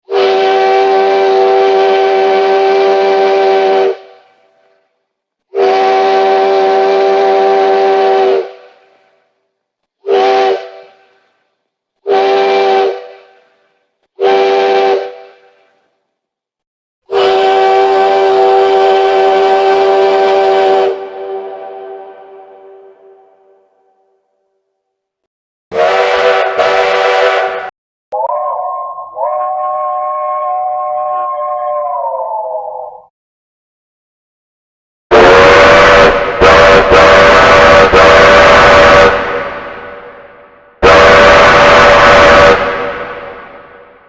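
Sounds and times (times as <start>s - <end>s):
steam train whistle blasts: 0.1s - 4.5s, 5.5s - 9.2s, 10.0s - 11.3s, 12.0s - 13.6s, 14.2s - 15.8s, 17.1s - 23.7s, 25.7s - 30.8s, 35.1s - 40.0s, 40.8s - 43.8s.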